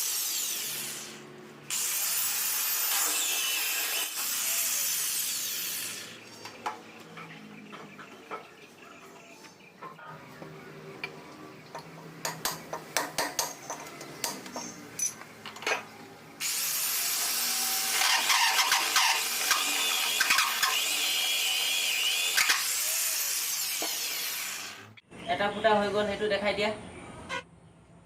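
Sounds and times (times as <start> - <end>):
electric drill whining: 16.4 - 24.9.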